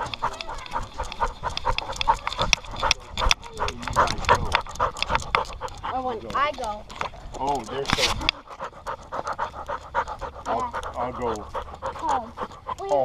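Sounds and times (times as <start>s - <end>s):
dog panting: 0.0s - 13.0s.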